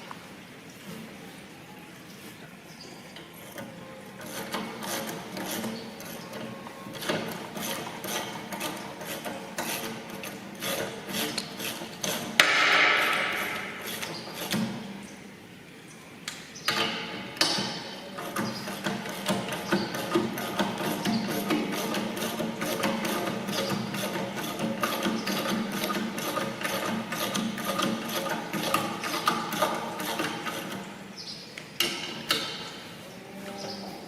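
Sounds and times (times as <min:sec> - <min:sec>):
metal scraping: 0:03.4 - 0:14.9, 0:16.9 - 0:31.0.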